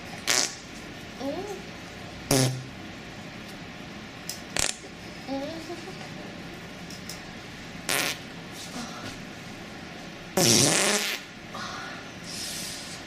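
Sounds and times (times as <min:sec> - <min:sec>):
farts: 0:00.2 - 0:00.6, 0:02.3 - 0:02.7, 0:07.9 - 0:08.2, 0:10.4 - 0:11.3.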